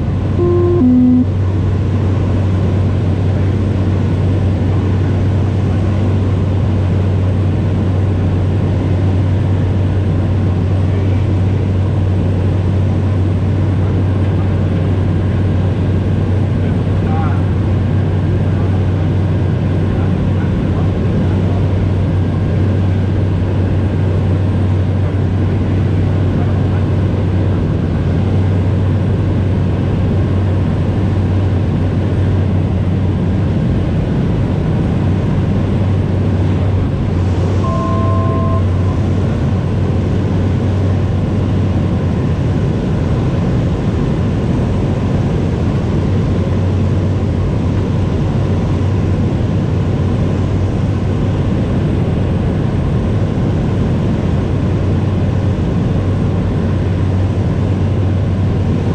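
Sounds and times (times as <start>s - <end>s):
turboprop engine drone: 0.0s - 58.9s
two-tone beep: 0.4s - 1.3s, 37.6s - 39.1s.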